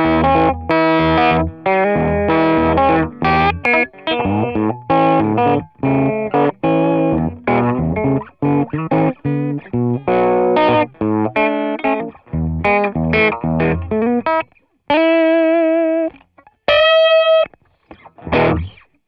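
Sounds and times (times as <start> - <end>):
lightly distorted electric guitar: 0.0 - 19.0.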